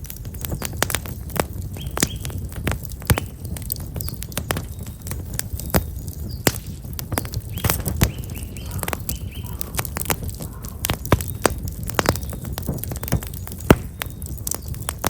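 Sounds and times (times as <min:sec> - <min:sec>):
low rumble of flames: 0:00.0 - 0:15.0
wood fire crackling and popping: 0:00.0 - 0:15.0
small birds chirping: 0:00.1 - 0:15.0.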